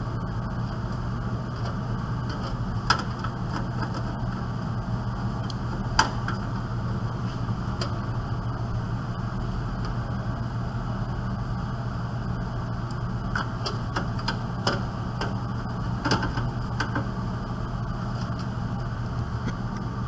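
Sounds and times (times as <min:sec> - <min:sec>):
steady low hum: 0:00.0 - 0:20.0
computer parts clicking and tapping: 0:00.5 - 0:06.8, 0:12.9 - 0:17.3.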